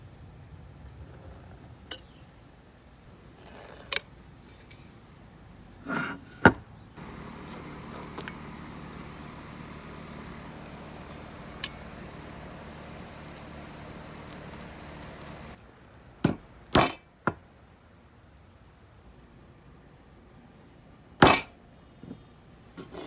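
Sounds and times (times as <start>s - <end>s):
tool scrape: 5.8s - 15.6s, 22.8s - 23.0s
steady low hum: 7.0s - 15.6s.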